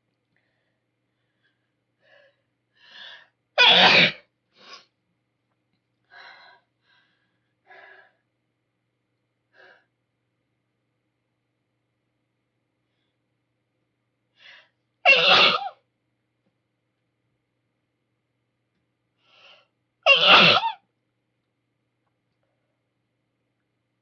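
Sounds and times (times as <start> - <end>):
woman sneezing: 3.6 - 4.2.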